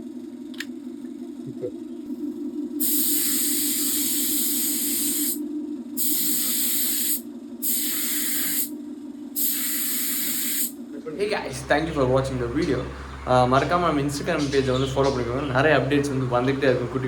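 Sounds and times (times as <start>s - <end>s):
air compressor motor humming: 1.3s - 17.0s
spray gun hissing: 2.8s - 5.4s, 6.0s - 8.7s, 9.4s - 10.8s.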